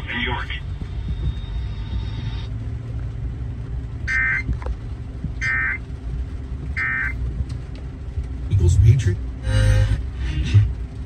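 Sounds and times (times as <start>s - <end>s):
low vehicle rumble: 0.0s - 11.0s
shrill warbling data tone bursts: 4.1s - 4.5s, 5.4s - 5.8s, 6.8s - 7.2s.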